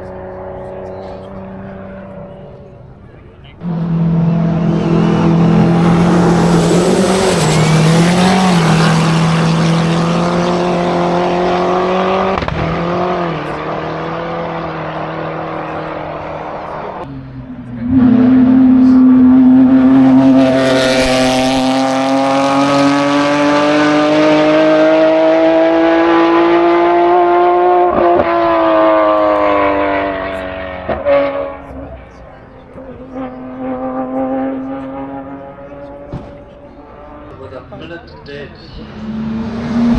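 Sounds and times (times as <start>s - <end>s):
race car engine at high revs: 0.0s - 37.7s, 38.5s - 39.9s.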